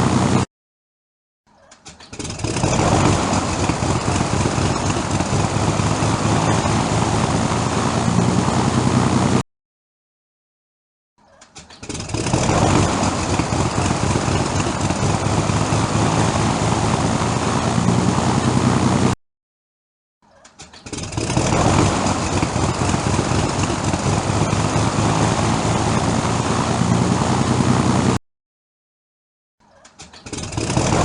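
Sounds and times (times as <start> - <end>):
propeller aircraft engine starting: 0.0 - 0.5, 1.8 - 9.4, 11.4 - 19.2, 20.5 - 28.2, 29.8 - 31.0.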